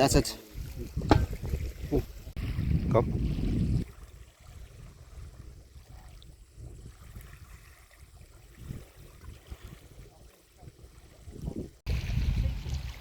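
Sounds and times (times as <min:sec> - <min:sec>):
light water sounds: 0:00.0 - 0:13.0
wind rumble on microphone: 0:00.2 - 0:13.0.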